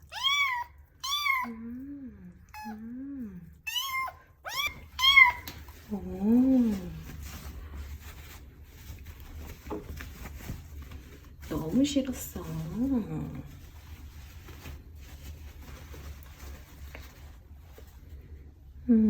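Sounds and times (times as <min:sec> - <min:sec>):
kitten mewing: 0:00.0 - 0:01.8, 0:02.4 - 0:02.9, 0:03.6 - 0:05.7.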